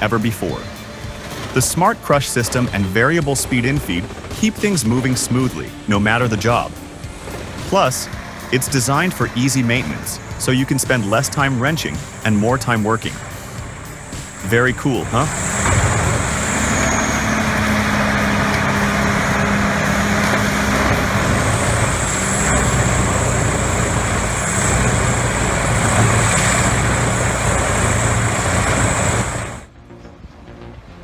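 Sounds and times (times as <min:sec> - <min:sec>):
high whine: 0:00.0 - 0:31.0
material going through chipper: 0:01.3 - 0:29.7
wood chipper engine hum: 0:05.2 - 0:29.7.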